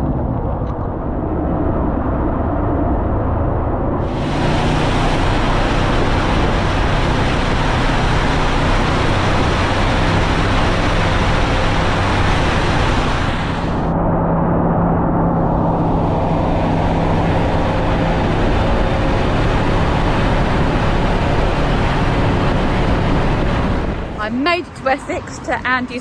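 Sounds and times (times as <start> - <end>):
motorcycle engine drone: 0.0 - 26.0
wind noise on microphone: 0.0 - 26.0
loud rushing hiss: 4.0 - 13.9.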